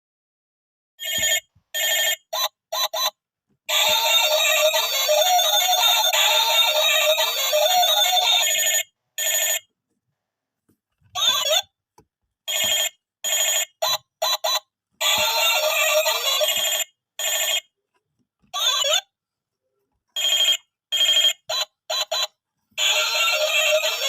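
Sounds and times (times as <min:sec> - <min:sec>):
toy telephone ringtone effects: 0:01.0 - 0:09.7, 0:12.5 - 0:17.7, 0:18.6 - 0:19.1, 0:20.2 - 0:24.0
electronic toy tune: 0:02.4 - 0:08.8, 0:13.3 - 0:16.9, 0:21.3 - 0:24.0.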